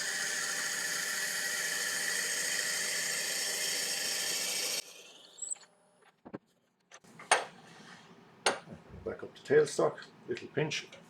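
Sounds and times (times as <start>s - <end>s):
lathe drilling hissing drone: 0.0s - 5.5s.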